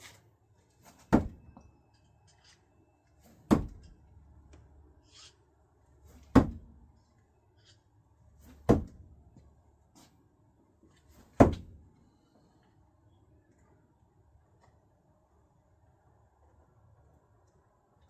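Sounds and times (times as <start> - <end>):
screwdrivers thunking into target: 0.9 - 1.6, 3.3 - 4.0.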